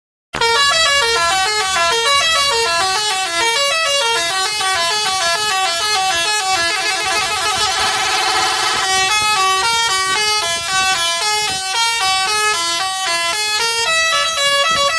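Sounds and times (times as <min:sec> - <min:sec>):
musical air horn melody: 0:00.4 - 0:14.9.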